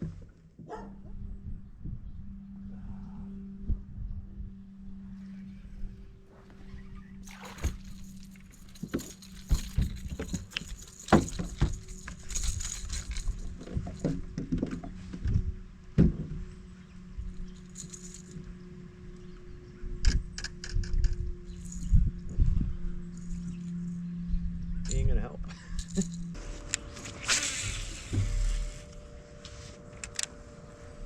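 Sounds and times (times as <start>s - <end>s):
steady low hum: 0.0s - 31.0s
fishing gear rattling and clicking: 6.5s - 15.0s, 17.4s - 18.6s, 20.3s - 22.1s, 24.9s - 29.2s.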